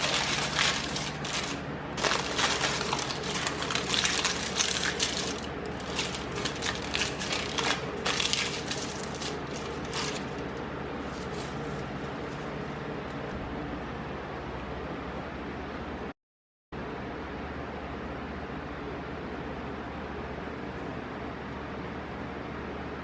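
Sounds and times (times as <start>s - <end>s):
debris crackling and rattling: 0.0s - 10.5s
vacuum cleaner humming: 0.0s - 12.8s.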